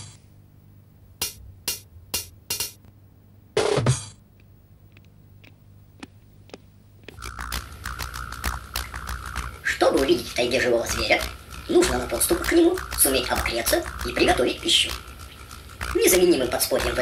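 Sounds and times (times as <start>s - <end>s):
fast rhythmic ticks: 5.4s - 17.0s
steady tone: 7.1s - 17.0s.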